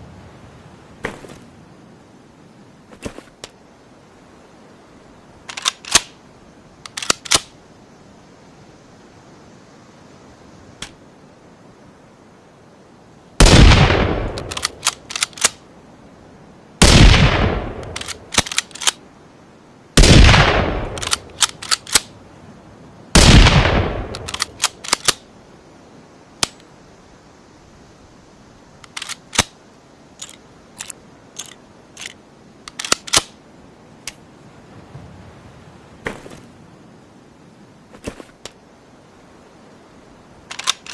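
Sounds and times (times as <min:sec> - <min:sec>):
rifle shots with echo: 0:13.4 - 0:14.6, 0:16.8 - 0:18.5, 0:20.0 - 0:21.2, 0:23.2 - 0:25.2.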